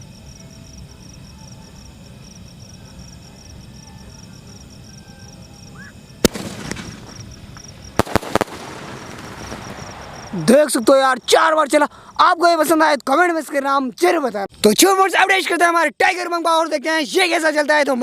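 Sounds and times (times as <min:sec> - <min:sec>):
crickets chirping: 0:00.0 - 0:18.0
firework bangs: 0:06.2 - 0:11.1.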